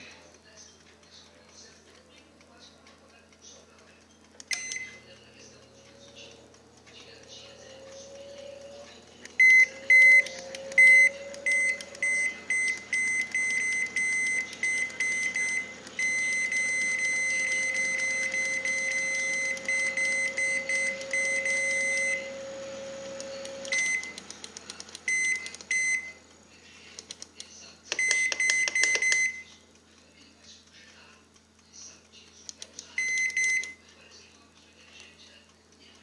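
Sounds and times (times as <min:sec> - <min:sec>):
microwave short beeps: 0:04.5 - 0:05.2, 0:09.4 - 0:24.2, 0:25.1 - 0:26.2, 0:28.0 - 0:29.5, 0:33.0 - 0:33.8
microwave long beep: 0:04.5 - 0:05.3, 0:07.2 - 0:24.2, 0:25.0 - 0:26.2, 0:28.0 - 0:29.6, 0:33.0 - 0:33.8.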